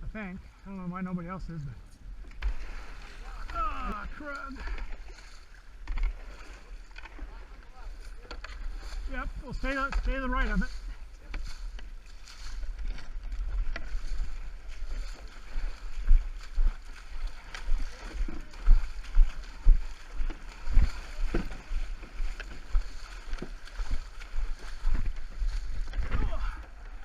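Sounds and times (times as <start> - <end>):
paddle strokes: 0.4 - 27.0
water sloshing: 1.5 - 27.0
wind rumble on microphone: 6.6 - 27.0.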